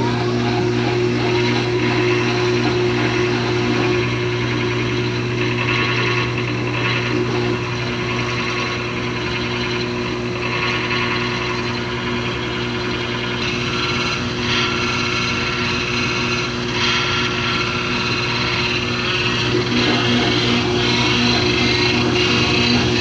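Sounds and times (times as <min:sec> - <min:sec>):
washing machine motor hum: 0:00.0 - 0:23.0
rough rasping grind: 0:13.4 - 0:23.0.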